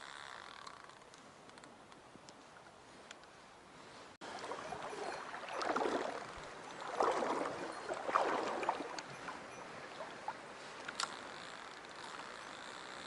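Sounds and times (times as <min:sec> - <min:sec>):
stream water rushing: 0:04.2 - 0:11.2
water sloshing: 0:04.2 - 0:13.0.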